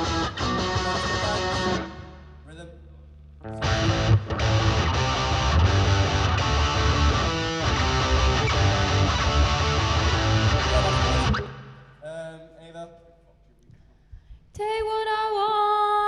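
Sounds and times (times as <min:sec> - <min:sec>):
rhythm guitar strumming chords: 0:00.0 - 0:02.3, 0:03.4 - 0:12.0.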